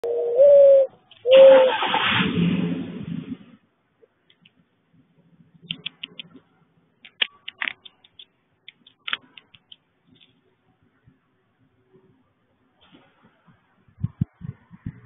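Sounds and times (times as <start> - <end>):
light irregular clicks and taps: 4.2 - 4.6, 5.6 - 10.4.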